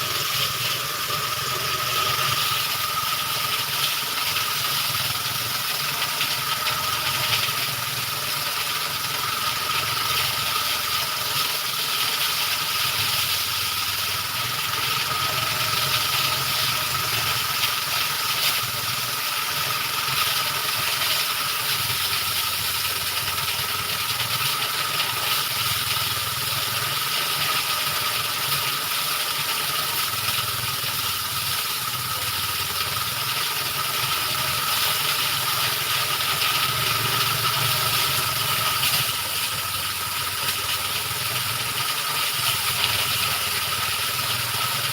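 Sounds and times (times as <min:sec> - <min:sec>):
threshing machine whirring and rattling: 0:00.0 - 0:44.9.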